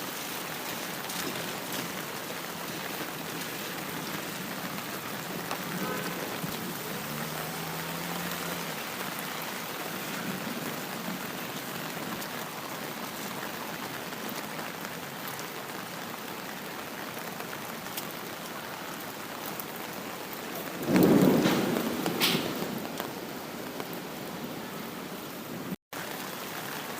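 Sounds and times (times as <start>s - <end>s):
steady rain falling: 0.0s - 26.9s
loud clap of thunder: 20.8s - 23.1s.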